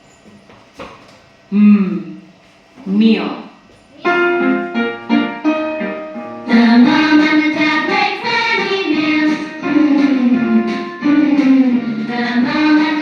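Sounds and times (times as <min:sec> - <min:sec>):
children's song instrumental: 0:04.0 - 0:13.0
voices singing: 0:06.5 - 0:13.0.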